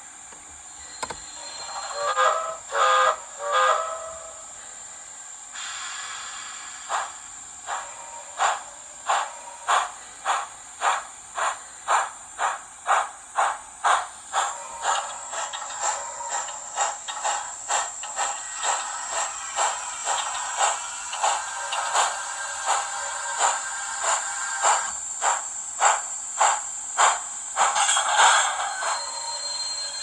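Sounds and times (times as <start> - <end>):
steam hiss: 0.0 - 30.0
steam exhaust chuffs: 1.0 - 30.0
steam whistle blasts: 1.2 - 4.5.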